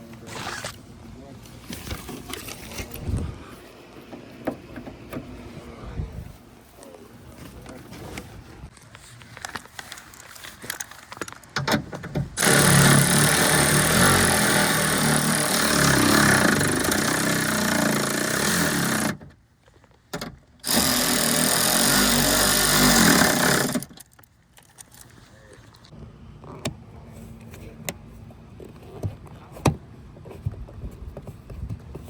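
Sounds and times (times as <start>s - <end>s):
key-cutting machine motor: 12.4s - 19.2s, 20.6s - 23.9s.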